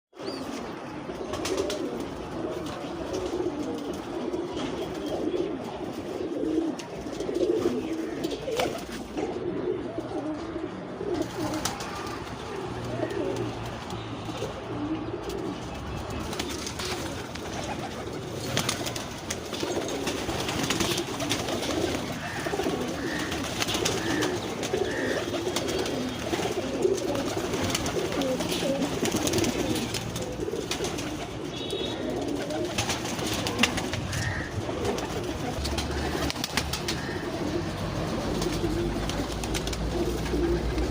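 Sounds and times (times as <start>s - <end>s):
pigeons cooing: 0.2s - 40.9s.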